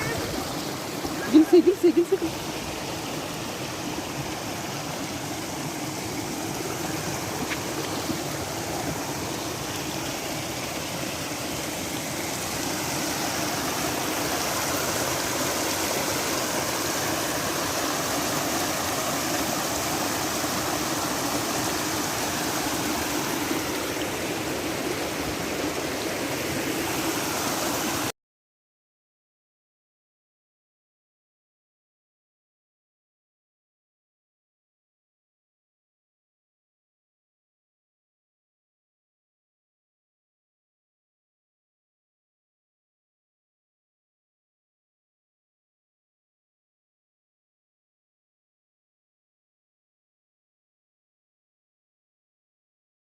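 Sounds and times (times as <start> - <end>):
running water rushing: 0.0 - 28.1.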